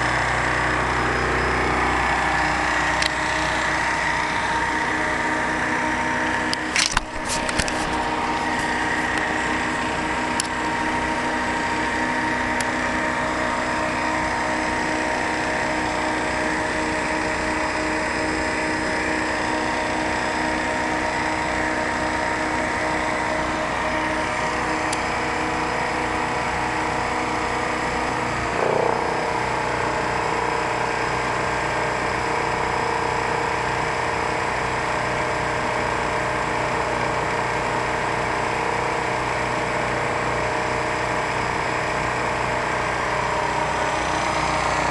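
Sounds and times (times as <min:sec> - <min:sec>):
generator running: 0:00.0 - 0:44.9.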